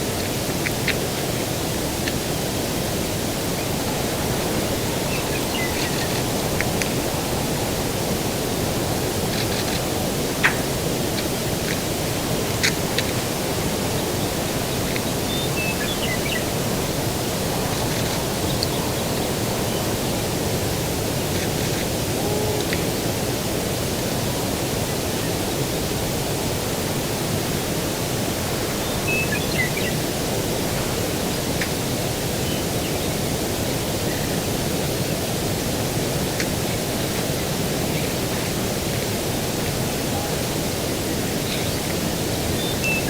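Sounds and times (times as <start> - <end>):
low rushing outdoor ambience: 0.0 - 43.0
bird chirping: 5.0 - 6.2, 15.1 - 16.5, 28.8 - 30.0.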